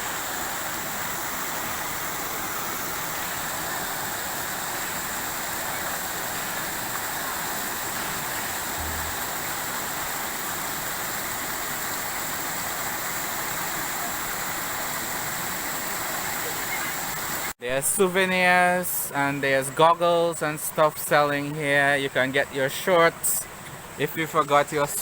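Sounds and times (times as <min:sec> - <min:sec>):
waterfall rushing: 0:00.0 - 0:17.6.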